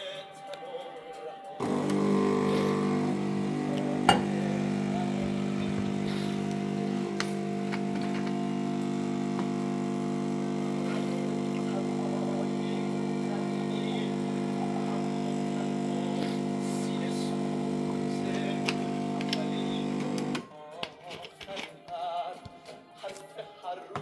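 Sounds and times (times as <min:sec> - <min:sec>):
espresso machine pump humming: 0:01.6 - 0:20.5
click: 0:06.4 - 0:09.5, 0:18.2 - 0:20.4.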